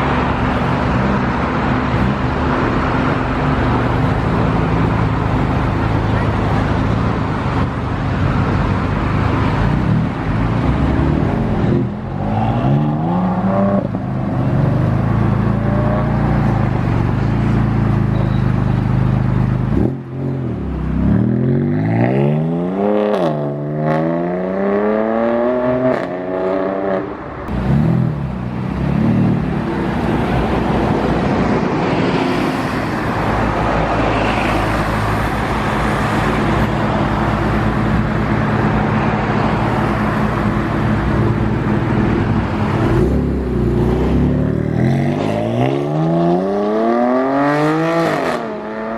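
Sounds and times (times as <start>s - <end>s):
car revving and accelerating: 8.2s - 18.0s, 19.7s - 48.9s.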